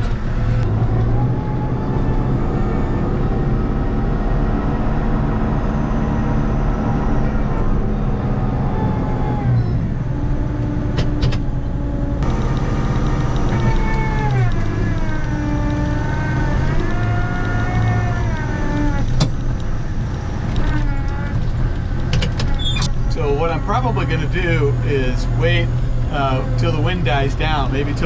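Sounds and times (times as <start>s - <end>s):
tractor engine running under load: 11.4s - 28.0s.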